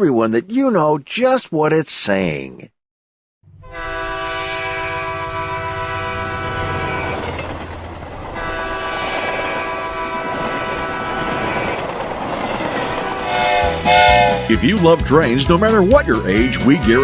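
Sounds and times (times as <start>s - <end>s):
locomotive horn blasts: 3.5s - 7.5s, 8.3s - 11.8s, 12.8s - 14.6s
moving train rumble: 3.5s - 17.0s.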